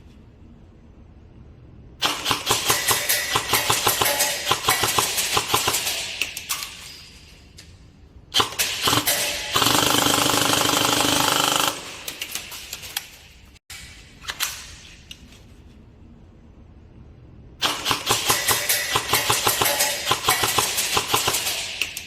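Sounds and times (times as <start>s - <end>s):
airsoft guns firing: 8.4s - 12.6s, 17.6s - 22.0s.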